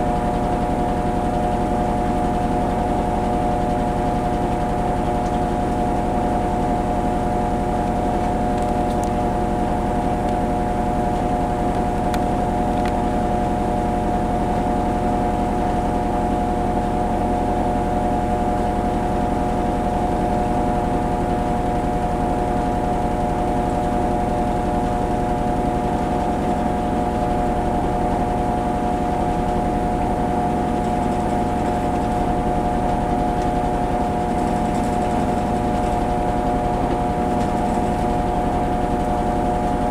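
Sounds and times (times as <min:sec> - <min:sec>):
washing machine drum spinning: 0:28.0 - 0:39.9.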